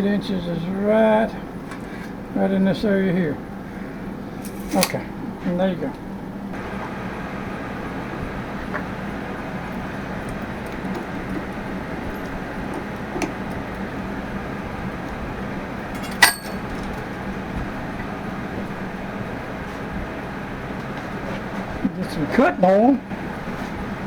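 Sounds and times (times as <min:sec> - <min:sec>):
workshop low hum: 0:00.0 - 0:24.0
sharp metallic click: 0:04.4 - 0:05.0.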